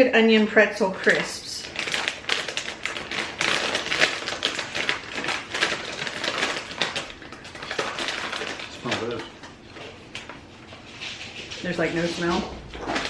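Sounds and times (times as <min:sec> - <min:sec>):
plastic snack packet crackling: 0:01.0 - 0:09.4.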